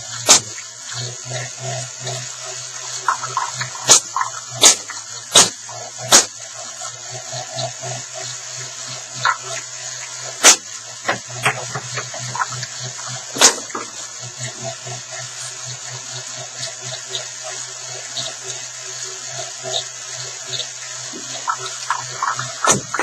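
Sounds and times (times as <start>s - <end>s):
ball machine motors whirring: 0.0s - 23.0s.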